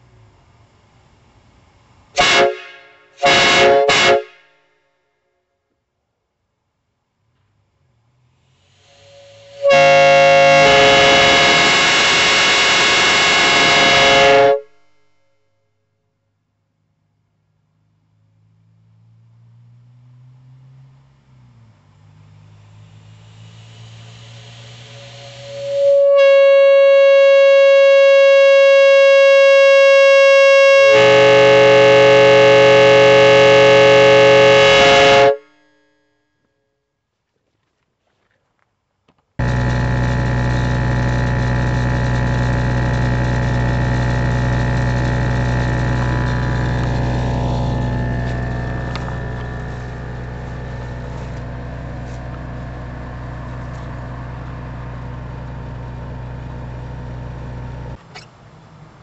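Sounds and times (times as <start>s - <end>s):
train air horn blast: 2.2s - 4.6s, 8.7s - 15.0s, 24.8s - 35.7s, 39.4s - 54.6s.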